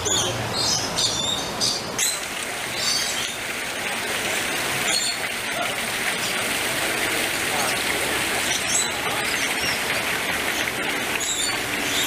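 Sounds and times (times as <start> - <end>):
parrots chirping: 0.0 - 3.4, 8.4 - 12.0.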